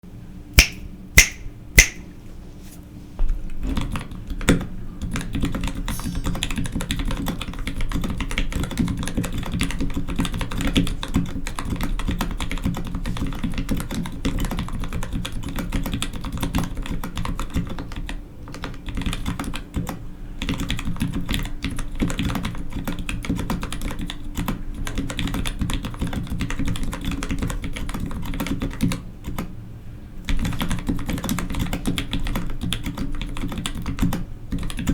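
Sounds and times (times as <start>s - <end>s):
sharp ringing clicks: 0.6s - 2.0s
mechanical keyboard typing: 30.4s - 34.9s.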